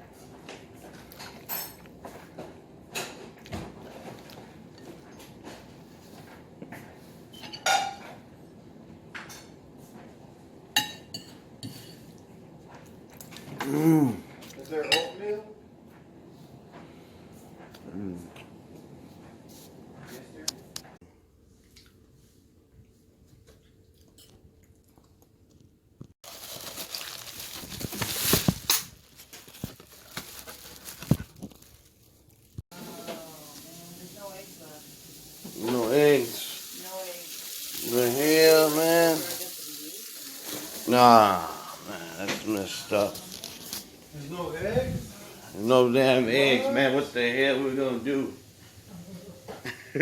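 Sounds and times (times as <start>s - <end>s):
dishes and cutlery clinking: 0.9s - 5.6s, 7.3s - 8.2s, 14.4s - 15.3s
rustling: 26.2s - 34.6s.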